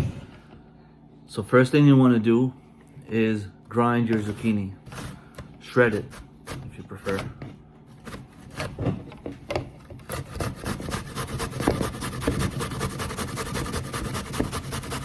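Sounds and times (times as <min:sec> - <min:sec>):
zucchini being shredded: 0:10.0 - 0:15.0.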